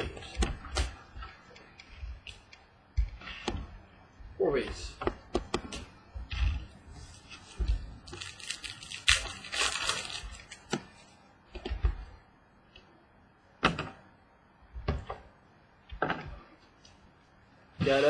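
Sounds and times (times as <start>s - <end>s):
crinkly packaging rustling: 7.1s - 10.7s.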